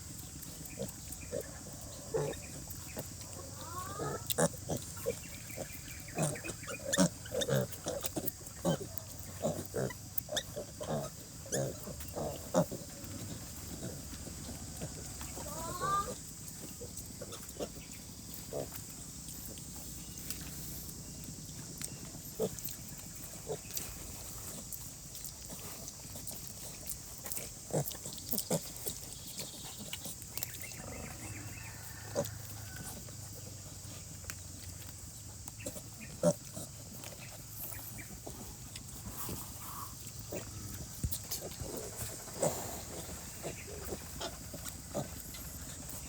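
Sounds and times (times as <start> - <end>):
pigs grunting: 0.3 - 34.8, 35.5 - 46.0
piglet squeal: 3.6 - 5.2, 15.4 - 16.2.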